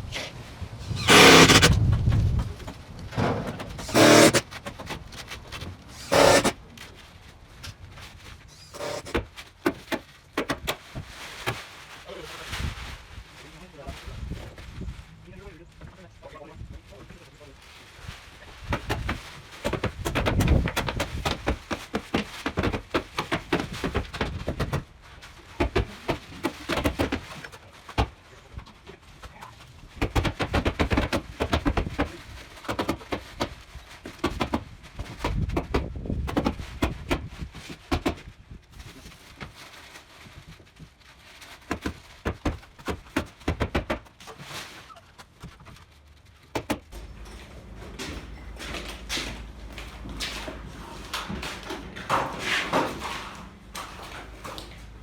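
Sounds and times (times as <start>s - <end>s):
knocking and clatter of building: 18.6s - 24.9s, 25.5s - 28.2s, 29.9s - 38.4s, 41.5s - 44.6s.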